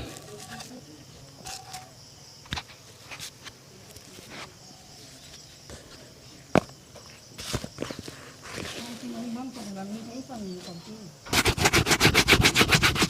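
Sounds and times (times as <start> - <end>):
insects chirring: 0.0 - 13.0
brush scraping: 7.4 - 13.0.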